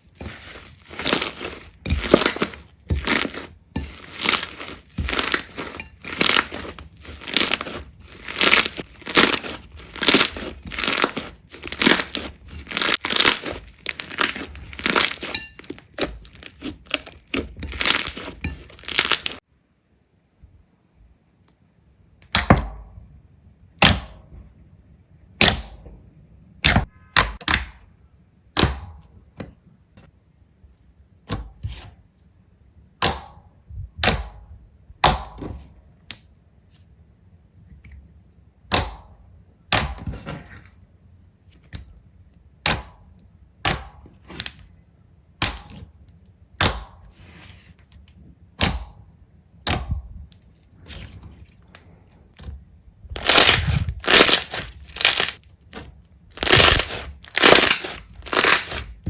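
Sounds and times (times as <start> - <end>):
slime crackling and crunching: 0.0 - 19.4, 53.1 - 59.0.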